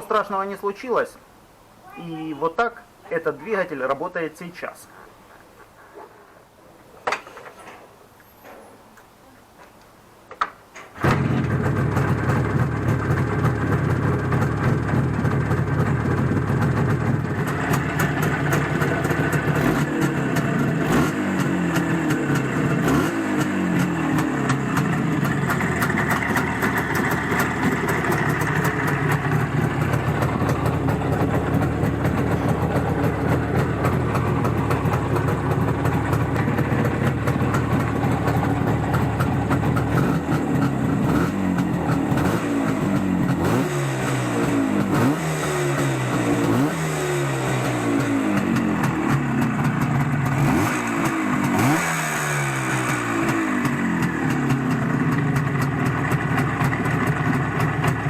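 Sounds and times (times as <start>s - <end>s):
motorcycle engine revving: 11.0s - 58.0s.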